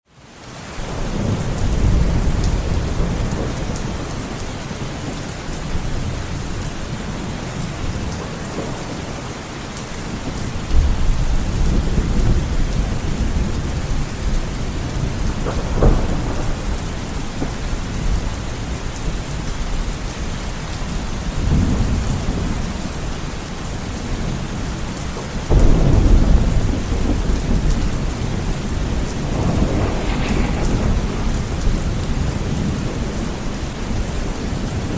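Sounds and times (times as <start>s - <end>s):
heavy rain pouring: 0.1s - 34.9s
deep low rumbles: 29.3s - 32.6s.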